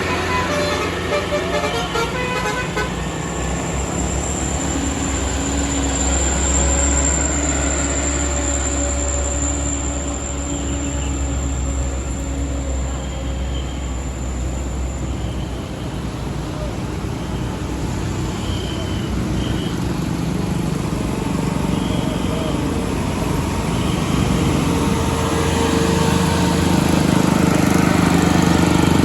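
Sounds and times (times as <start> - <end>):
multi-tone bus horn melody: 0.0 - 3.2
diesel engine rumbling: 0.0 - 29.0.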